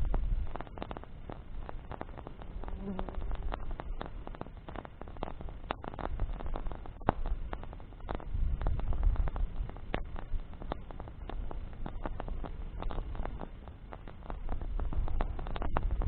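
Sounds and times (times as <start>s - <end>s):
campfire crackling and popping: 0.0s - 16.0s
flying insect buzzing: 0.9s - 4.8s.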